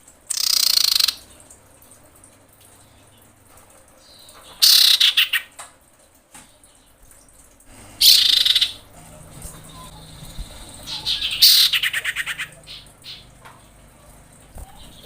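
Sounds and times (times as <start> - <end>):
bird chattering rattle: 0.3 - 1.3, 4.5 - 5.5, 8.0 - 8.8, 9.6 - 13.3.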